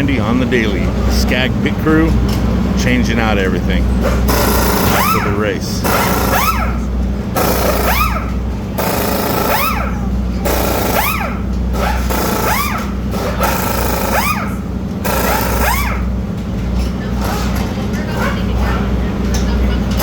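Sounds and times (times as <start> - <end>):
steady low hum: 0.0 - 20.0
rising and falling whine: 3.2 - 11.4
air tools rattling: 4.0 - 18.3.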